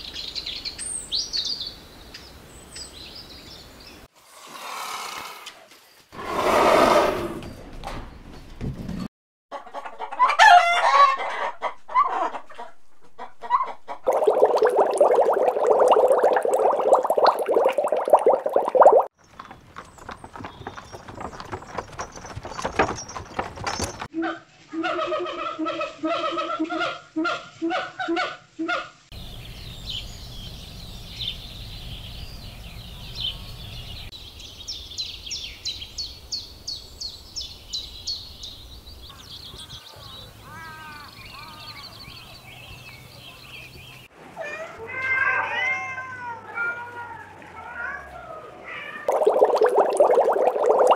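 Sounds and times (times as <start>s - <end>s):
small birds chirping: 0.0s - 4.1s, 18.9s - 24.1s, 29.2s - 44.1s.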